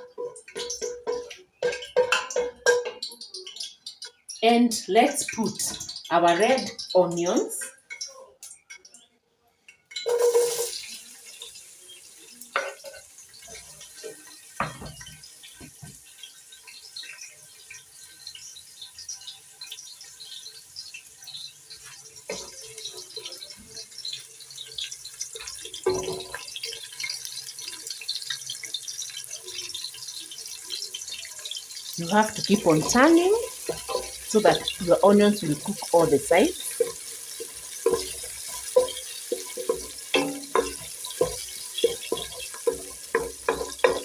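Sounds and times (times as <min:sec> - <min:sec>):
spoon knocking against pan: 0:00.0 - 0:03.3, 0:14.6 - 0:16.0, 0:25.4 - 0:26.5, 0:32.4 - 0:44.0
onions sizzling in oil: 0:00.0 - 0:08.2, 0:09.9 - 0:44.0.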